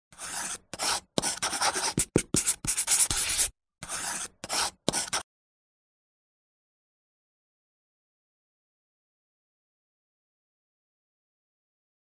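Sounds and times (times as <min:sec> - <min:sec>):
dry scratching: 0:00.2 - 0:05.2.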